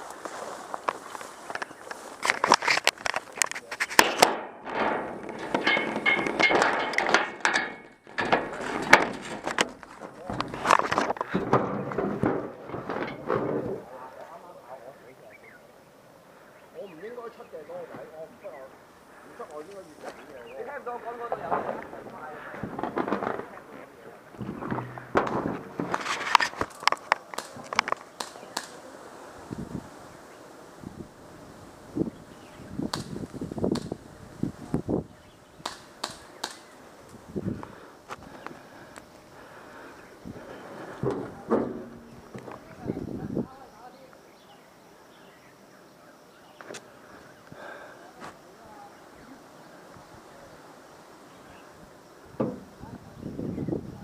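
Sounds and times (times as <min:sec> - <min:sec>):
voices: 0:00.0 - 0:54.0.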